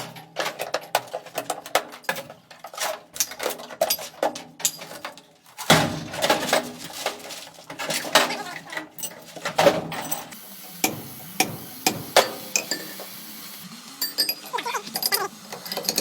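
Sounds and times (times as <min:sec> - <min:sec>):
metal tools clanking: 0:00.5 - 0:10.4, 0:14.0 - 0:16.0.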